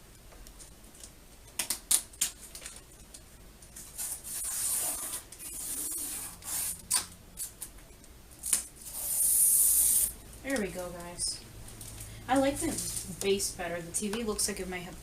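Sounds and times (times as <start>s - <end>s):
sharp clicks and crinkles: 0.4s - 3.9s
label rustling and scraping: 0.9s - 7.8s, 8.4s - 13.4s.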